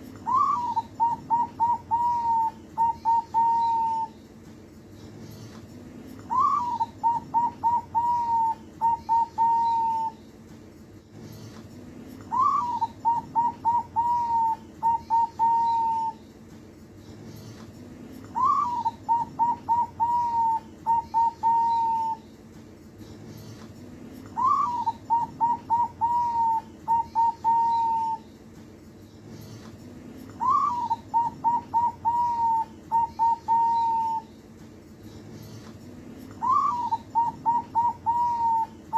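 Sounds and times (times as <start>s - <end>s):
dove cooing: 0.2s - 4.2s, 6.3s - 10.2s, 12.3s - 16.2s, 18.3s - 22.2s, 24.3s - 28.2s, 30.4s - 34.3s, 36.3s - 38.9s.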